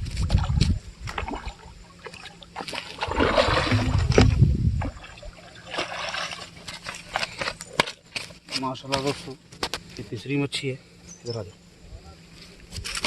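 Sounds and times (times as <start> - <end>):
water splashing and sloshing: 0.0 - 8.5.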